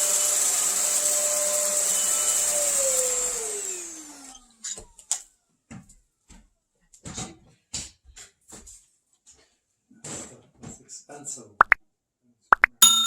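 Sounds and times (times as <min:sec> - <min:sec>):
stick vacuum whining: 0:00.0 - 0:04.6.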